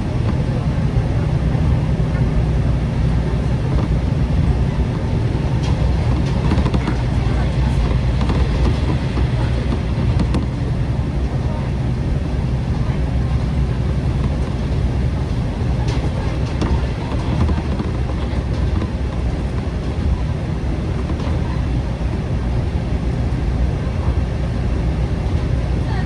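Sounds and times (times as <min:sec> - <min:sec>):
diesel railcar rumble: 0:00.0 - 0:26.0.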